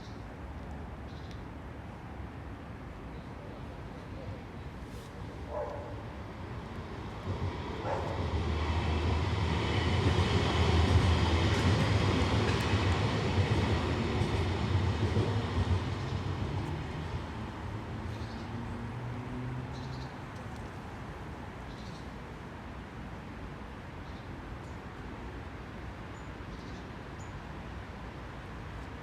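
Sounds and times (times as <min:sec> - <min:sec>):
vehicle passing by: 0:16.4 - 0:19.9.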